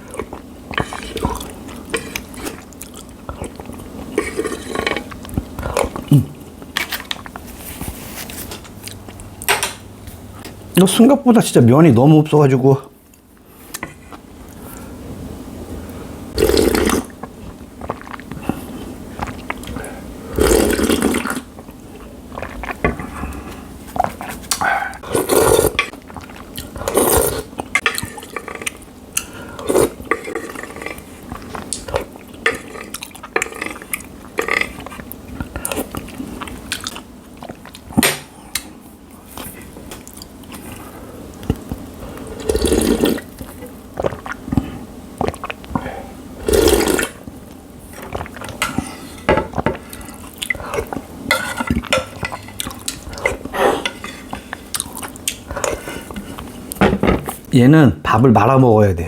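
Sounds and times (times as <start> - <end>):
chewing and swallowing: 0.0 - 9.5, 16.3 - 57.5
slurping noodles: 0.1 - 6.3, 16.3 - 37.9, 42.1 - 47.2.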